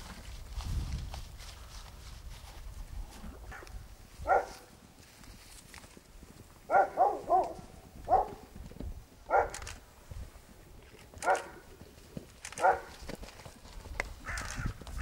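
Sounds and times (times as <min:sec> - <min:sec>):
dog barking: 0:03.5 - 0:04.7, 0:06.7 - 0:08.4, 0:09.3 - 0:09.7, 0:11.2 - 0:11.6, 0:12.6 - 0:12.9.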